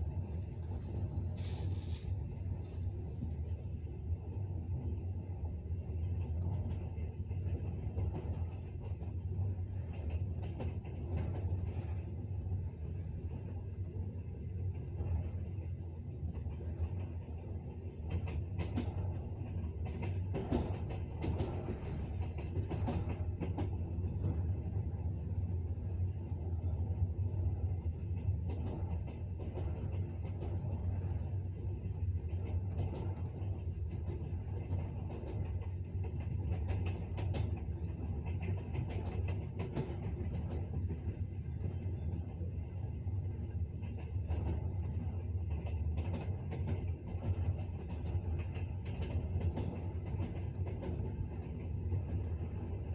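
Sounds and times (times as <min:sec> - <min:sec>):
low rumble of moving train: 0:00.0 - 0:52.9
train wheels clicking over rails: 0:32.3 - 0:41.8, 0:43.8 - 0:52.8.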